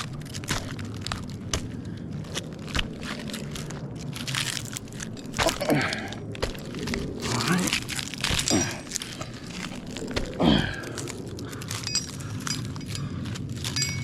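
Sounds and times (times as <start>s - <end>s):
climbing spurs crunching bark: 0.0s - 14.0s.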